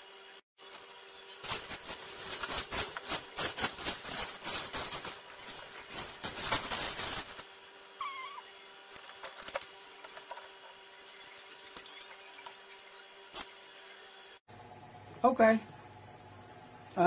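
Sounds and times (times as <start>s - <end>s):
packaging rustling and crackling: 0.6s - 7.5s.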